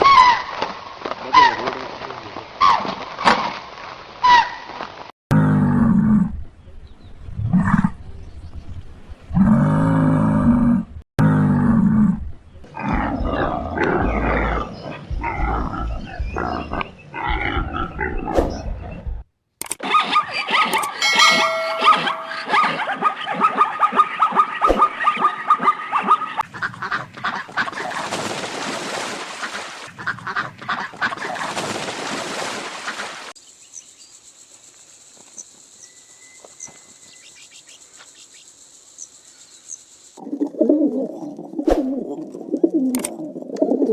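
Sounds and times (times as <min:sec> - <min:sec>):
low drawn-out animal calls: 0:09.4 - 0:19.0.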